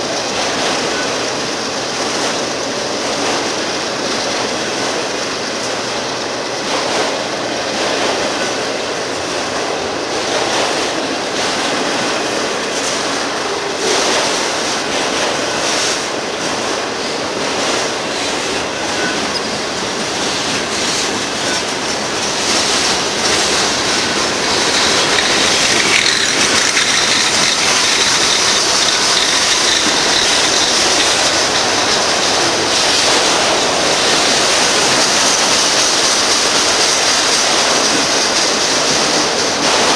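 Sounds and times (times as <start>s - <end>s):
steel wheels clattering on rails: 0.0s - 39.9s
high wheel squeal: 17.0s - 37.6s.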